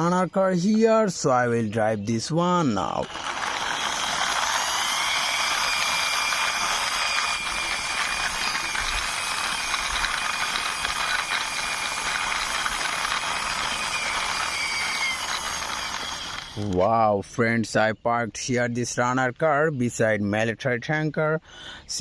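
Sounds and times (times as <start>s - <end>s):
toy car wheels rolling: 2.2s - 16.9s.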